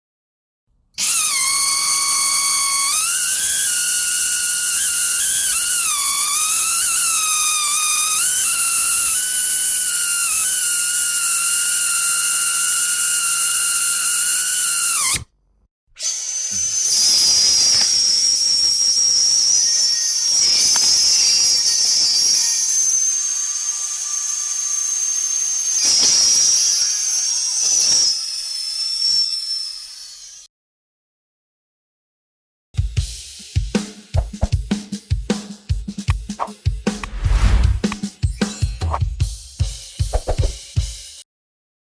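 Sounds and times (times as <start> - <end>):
higher-pitched drill whine: 1.0 - 15.2, 16.0 - 30.5
dentist's drill whining: 1.0 - 15.3, 16.0 - 30.5
hiss and rasping: 16.1 - 28.5, 36.4 - 38.1.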